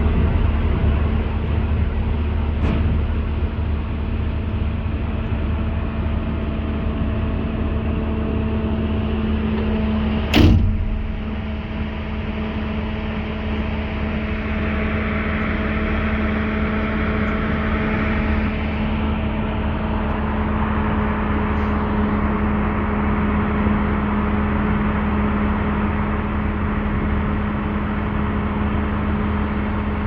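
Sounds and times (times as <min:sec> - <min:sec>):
excavator diesel engine running: 0:00.0 - 0:30.0
loud bang: 0:10.2 - 0:13.4.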